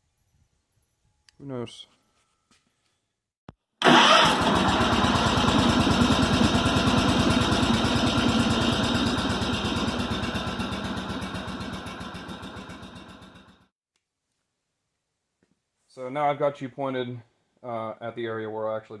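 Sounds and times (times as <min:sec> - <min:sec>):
small engine running: 0:03.8 - 0:13.7.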